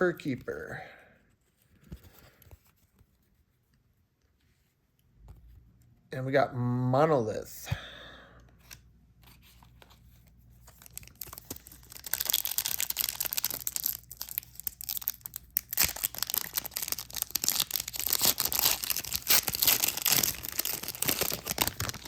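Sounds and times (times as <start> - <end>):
wrapper tearing and crinkling: 10.6 - 22.0.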